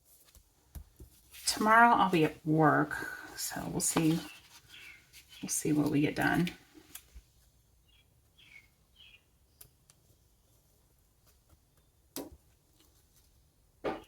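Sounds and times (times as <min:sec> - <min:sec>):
faint bird chirping: 0:03.9 - 0:06.5, 0:07.8 - 0:10.7.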